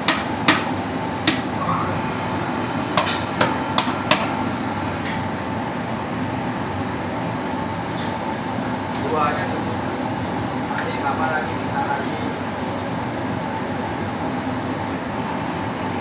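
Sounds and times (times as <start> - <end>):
hammer tapping on metal: 0.0 - 1.5, 3.0 - 4.4
machinery hum: 0.0 - 16.0.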